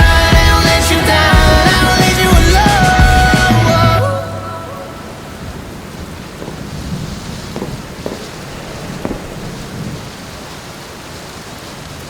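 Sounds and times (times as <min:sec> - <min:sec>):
hard rain falling: 0:01.0 - 0:12.0
low rumble of thunder: 0:04.7 - 0:12.0
sharp raindrop taps: 0:05.4 - 0:12.0.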